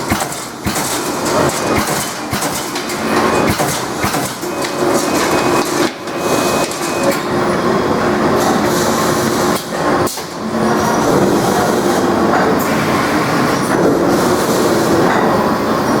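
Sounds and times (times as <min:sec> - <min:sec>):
punch press mechanical clatter: 0:00.0 - 0:07.3.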